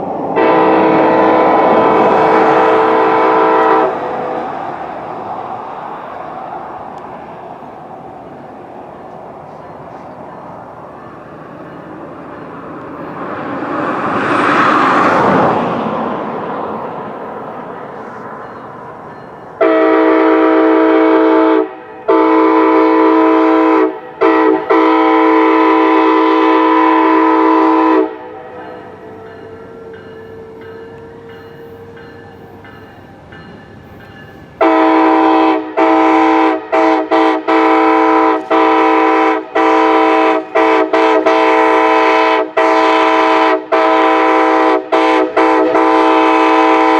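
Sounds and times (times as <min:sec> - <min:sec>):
rushing noise: 0:00.0 - 0:19.6
locomotive air horn blasts: 0:00.4 - 0:04.4, 0:19.6 - 0:28.8, 0:34.6 - 0:46.9.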